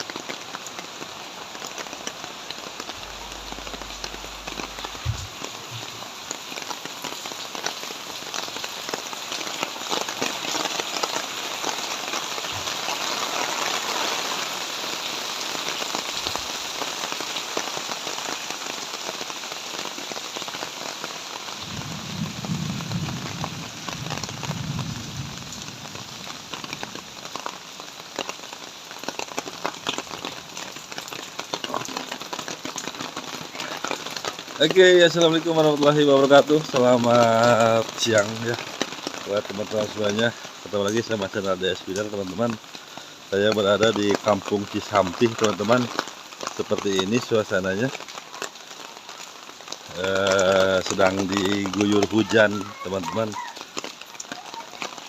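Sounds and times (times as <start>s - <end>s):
heavy rain hissing: 0.0s - 55.0s.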